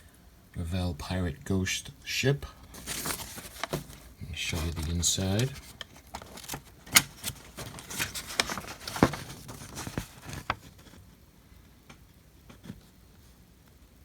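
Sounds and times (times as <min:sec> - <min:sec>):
booklet pages turning: 0:02.7 - 0:11.1.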